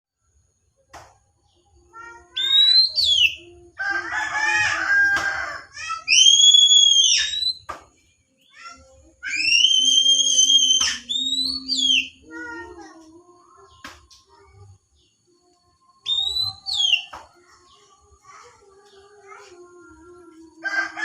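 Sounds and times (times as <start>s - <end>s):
bird whistling song: 2.3s - 3.5s, 6.1s - 7.7s, 8.5s - 12.3s, 16.0s - 17.8s.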